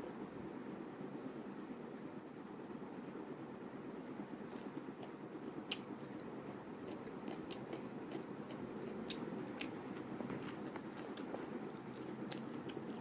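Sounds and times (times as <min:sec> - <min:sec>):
low background noise: 0:00.0 - 0:13.0
mouth clicks and smacks: 0:05.7 - 0:05.9
chewing: 0:06.8 - 0:13.0.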